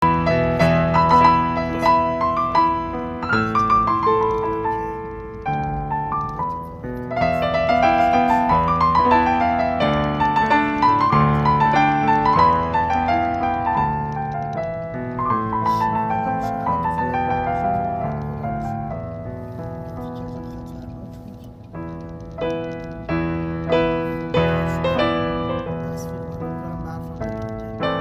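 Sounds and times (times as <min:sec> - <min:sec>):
piano music: 0:00.0 - 0:28.0.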